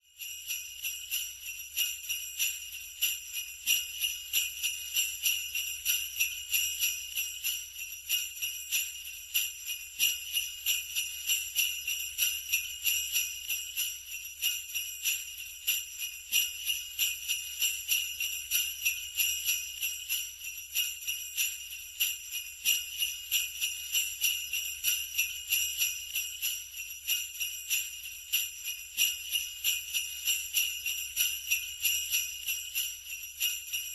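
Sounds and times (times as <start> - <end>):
sleigh bells jingling: 0.0 - 33.9.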